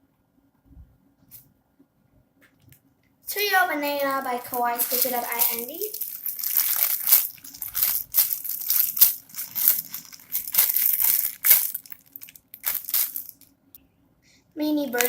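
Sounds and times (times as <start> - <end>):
foam toy crinkling and rustling: 3.4 - 13.5.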